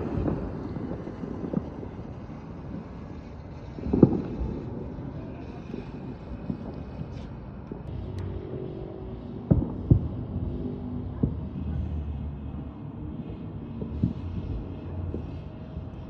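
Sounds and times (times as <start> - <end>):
fireworks bangs: 0.0 - 7.8, 9.3 - 15.9
low steady rumble: 0.0 - 16.0.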